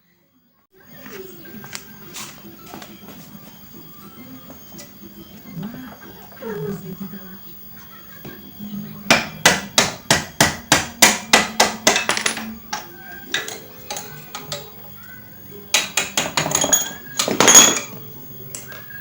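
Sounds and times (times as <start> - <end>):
hammer striking metal: 9.1 - 14.7, 15.7 - 17.9
metal clatter: 15.8 - 18.0.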